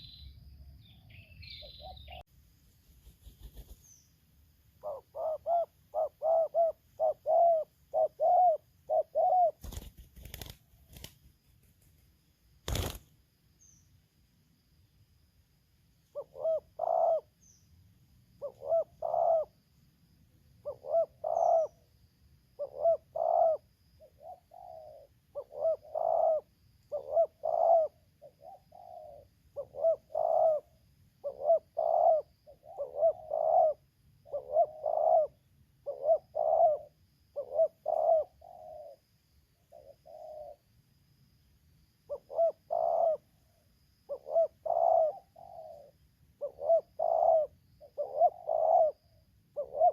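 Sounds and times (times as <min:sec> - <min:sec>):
doves cooing: 0:04.8 - 0:11.1, 0:16.1 - 0:17.4, 0:18.4 - 0:19.6, 0:20.6 - 0:21.9, 0:22.6 - 0:39.0, 0:39.7 - 0:40.6, 0:42.1 - 0:49.9.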